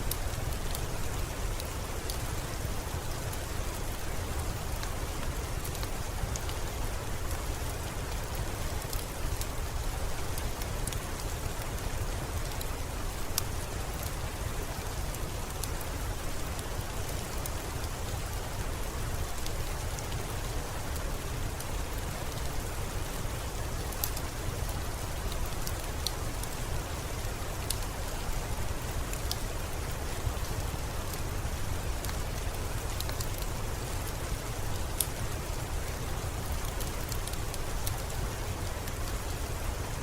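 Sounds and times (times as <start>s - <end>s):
steady rain: 0.0s - 40.0s
raindrops ticking: 23.5s - 39.7s.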